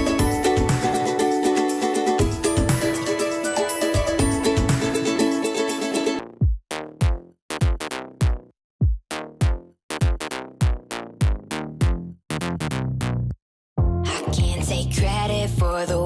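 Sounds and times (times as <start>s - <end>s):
deep drum machine kicks: 0.0s - 1.0s, 2.2s - 3.0s, 4.0s - 5.0s, 6.3s - 12.0s, 13.8s - 14.6s.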